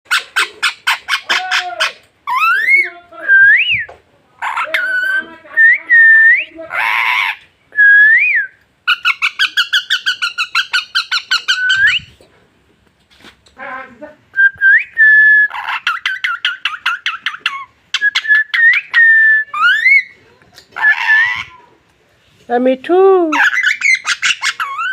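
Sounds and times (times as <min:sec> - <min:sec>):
parrot squawk: 0:00.1 - 0:02.9, 0:04.4 - 0:05.3, 0:06.7 - 0:07.5, 0:08.9 - 0:12.0, 0:15.4 - 0:21.7, 0:23.3 - 0:24.9
parrot whistling: 0:07.8 - 0:12.1, 0:14.4 - 0:20.2, 0:23.4 - 0:24.9.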